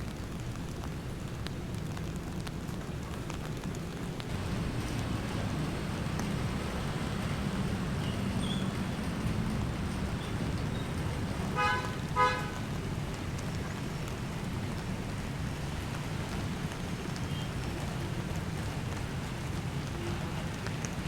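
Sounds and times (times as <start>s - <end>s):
steady rushing noise: 4.3s - 17.0s
vehicle horn tooting: 11.4s - 12.7s.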